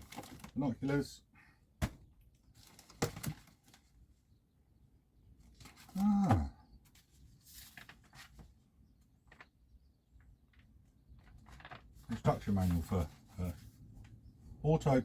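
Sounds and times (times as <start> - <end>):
clicks and rustles: 0.0 - 0.6, 1.9 - 4.0, 6.8 - 14.2
objects being rummaged: 10.5 - 13.5.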